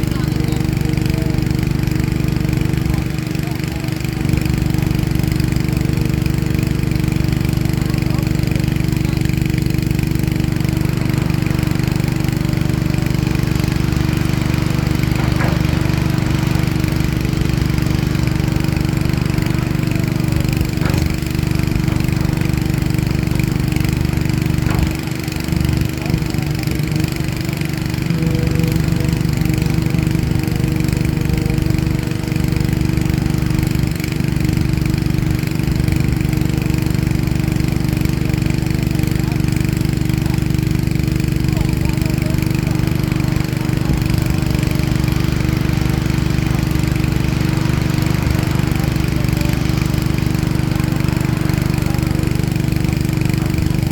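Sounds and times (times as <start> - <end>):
excavator diesel engine running: 0.0 - 53.9
faint knocks: 13.6 - 34.7.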